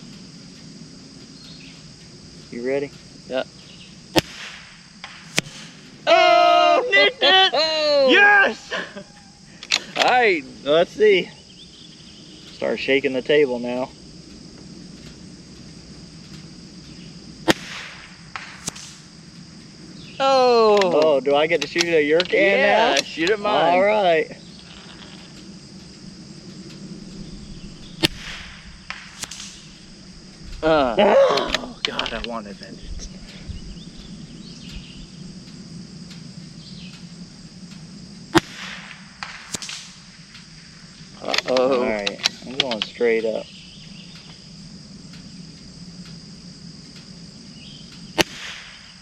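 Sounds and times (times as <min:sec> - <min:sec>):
insect chirring: 0:00.0 - 0:49.0
rifle shot crack: 0:04.1 - 0:06.0, 0:17.4 - 0:19.2, 0:27.1 - 0:30.3, 0:38.3 - 0:41.6, 0:48.1 - 0:49.0
sharp click: 0:17.5 - 0:19.1, 0:28.0 - 0:29.8, 0:37.7 - 0:40.4.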